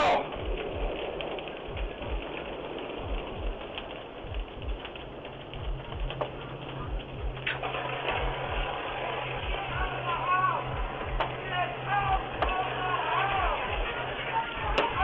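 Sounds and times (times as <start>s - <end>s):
low thuds: 0.0s - 8.8s, 10.6s - 12.7s
fire crackling clicks: 0.0s - 15.0s
fire rushing noise: 0.0s - 15.0s
low steady hum: 0.0s - 15.0s.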